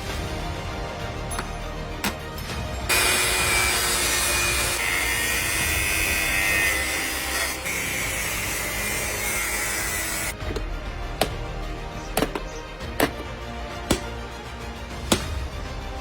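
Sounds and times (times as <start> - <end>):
power tool cutting with whine: 2.9 - 10.4.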